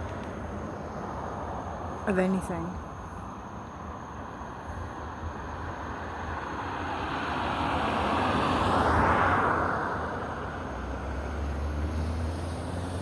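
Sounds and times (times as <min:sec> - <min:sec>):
vehicle passing by: 0:06.7 - 0:13.0.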